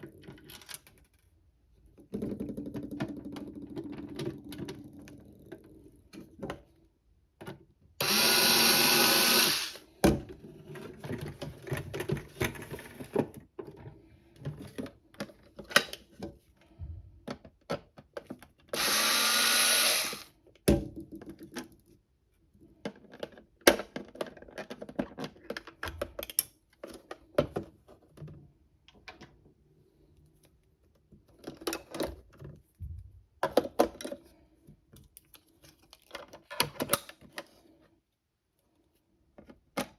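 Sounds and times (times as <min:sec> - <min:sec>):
toy washing machine motor whirring: 0:08.0 - 0:09.8, 0:18.8 - 0:20.3.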